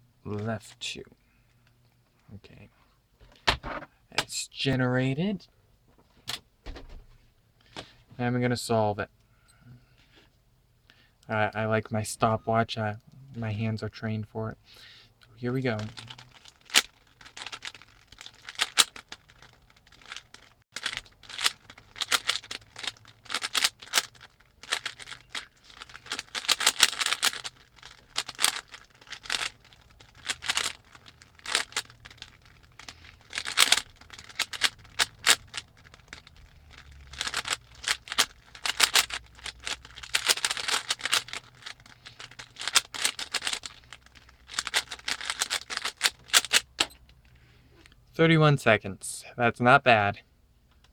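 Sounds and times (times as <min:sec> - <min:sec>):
puzzle cube clicking and rattling: 0:15.6 - 0:47.0.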